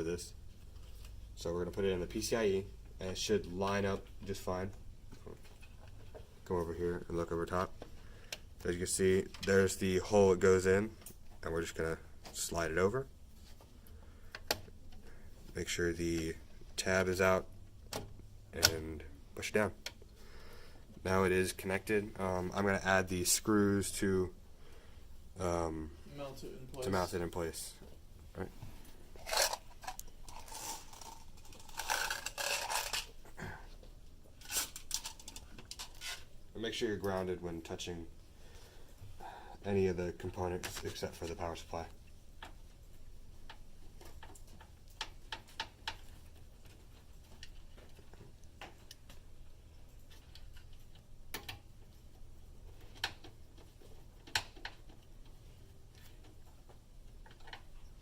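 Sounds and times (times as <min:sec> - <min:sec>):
screws scraping and clicking on metal: 0:29.1 - 0:33.2, 0:34.4 - 0:36.3.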